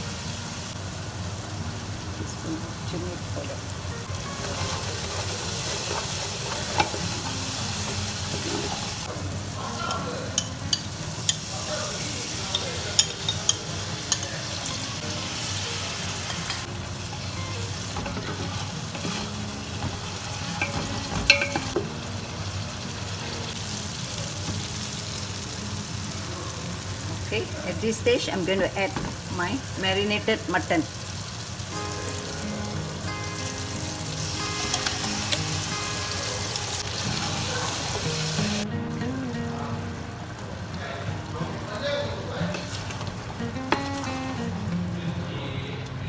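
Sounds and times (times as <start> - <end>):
onions sizzling in hot oil: 0.0 - 46.0
spoon clicking against pot: 12.5 - 14.4.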